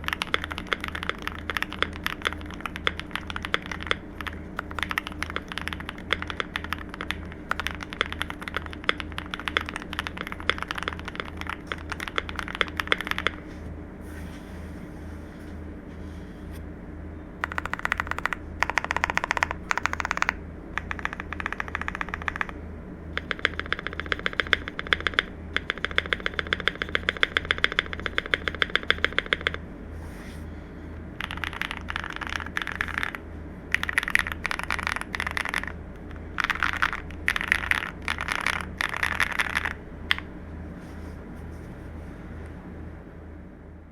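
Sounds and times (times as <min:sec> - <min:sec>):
mechanical keyboard typing: 0:00.0 - 0:13.4, 0:17.4 - 0:29.6, 0:31.2 - 0:40.3.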